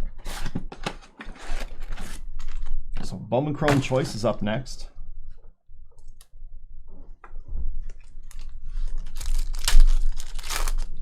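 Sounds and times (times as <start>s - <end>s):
foil packs crinkling and tearing: 8.1s - 11.0s.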